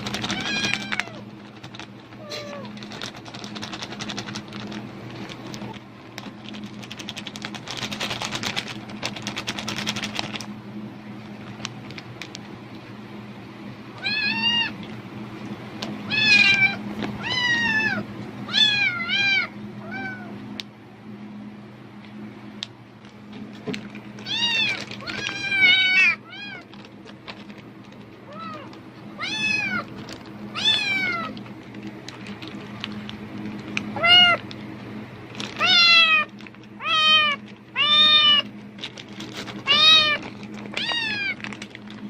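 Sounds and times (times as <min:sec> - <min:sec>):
plastic bag crinkling: 0:00.0 - 0:10.5, 0:11.2 - 0:12.5, 0:23.0 - 0:42.0
cat meowing: 0:00.2 - 0:01.2, 0:02.2 - 0:02.8, 0:14.0 - 0:14.8, 0:16.1 - 0:20.3, 0:24.2 - 0:26.7, 0:28.3 - 0:29.9, 0:30.5 - 0:31.4, 0:34.0 - 0:34.4, 0:35.6 - 0:38.5, 0:39.6 - 0:41.4.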